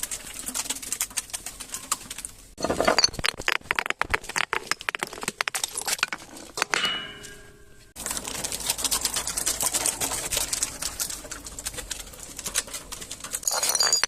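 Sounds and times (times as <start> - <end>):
glass being crushed: 2.6 - 8.1, 13.4 - 14.0
ringing glass tone: 6.8 - 8.0.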